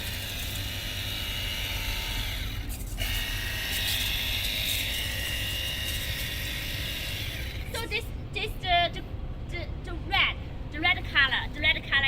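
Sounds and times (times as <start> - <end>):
pressure washer pump motor whining: 0.0 - 7.9.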